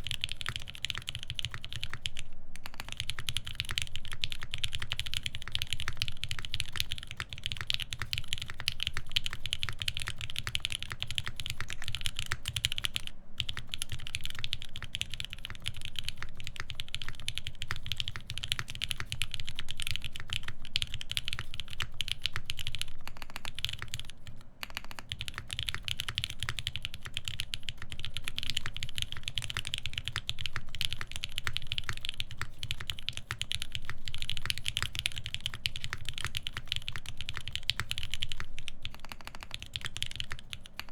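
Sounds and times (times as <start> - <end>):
fast mechanical keyboard typing: 0.0 - 40.9.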